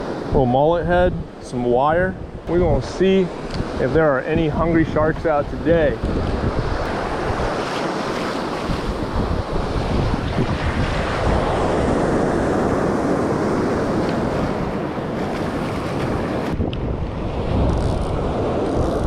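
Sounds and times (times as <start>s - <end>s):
surf washing on beach: 0.0s - 19.0s
wind buffeting microphone: 0.0s - 19.0s.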